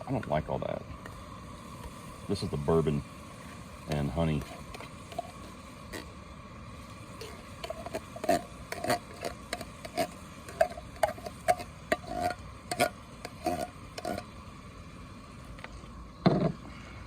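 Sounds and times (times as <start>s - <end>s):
spoon scraping metal pot: 3.9s - 6.1s, 7.2s - 14.3s.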